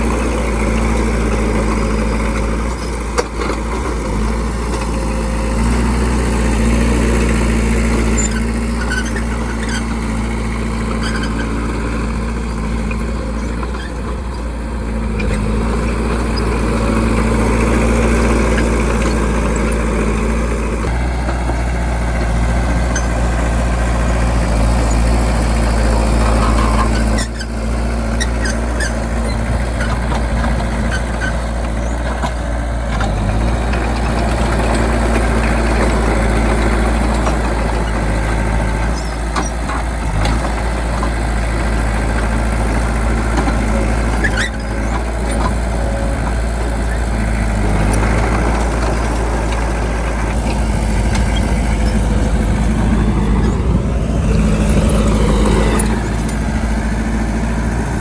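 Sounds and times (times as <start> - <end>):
bulldozer diesel engine idling: 0.0 - 58.0
light ticks and squeaks: 8.0 - 10.1, 10.8 - 14.4, 26.2 - 36.3, 43.4 - 48.9.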